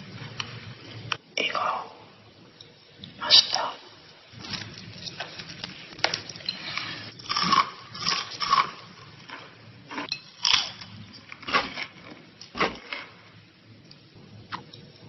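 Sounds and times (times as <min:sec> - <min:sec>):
person chewing crunchy food: 0:06.3 - 0:13.1.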